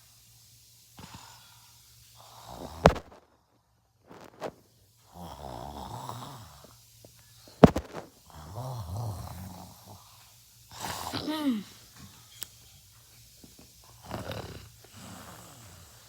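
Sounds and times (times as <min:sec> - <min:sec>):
person snoring: 0:02.2 - 0:03.2, 0:04.1 - 0:06.8, 0:07.6 - 0:11.9, 0:14.0 - 0:16.0.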